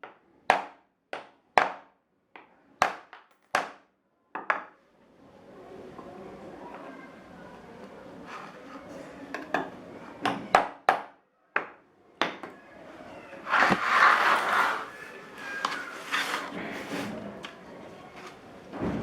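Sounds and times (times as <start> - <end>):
rasping rub: 13.5 - 15.0.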